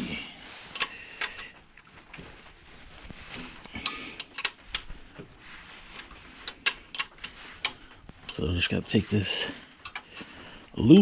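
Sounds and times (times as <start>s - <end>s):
hand tools clicking on metal: 0.7s - 1.5s, 3.6s - 4.9s, 5.9s - 8.5s, 9.8s - 11.0s.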